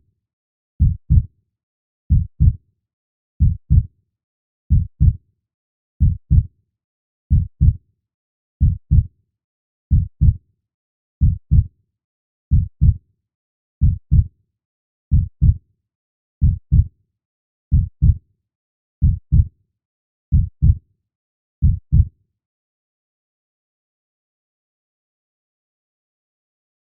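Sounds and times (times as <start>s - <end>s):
heartbeat thumps: 4.7s - 5.2s, 11.2s - 11.6s, 13.8s - 14.2s, 16.4s - 16.8s, 20.3s - 20.8s.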